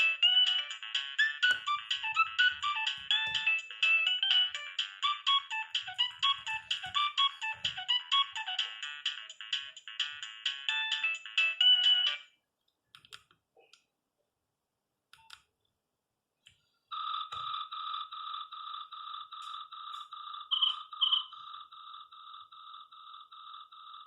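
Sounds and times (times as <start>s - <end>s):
phone ringtone melody: 0.0s - 12.3s, 16.9s - 24.0s
pulsing phone beep: 19.2s - 24.0s.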